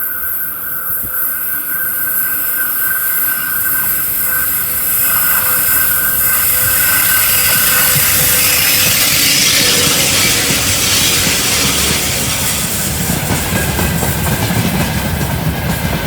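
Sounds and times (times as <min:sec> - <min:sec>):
train wheels squealing on rails: 0:00.0 - 0:16.0.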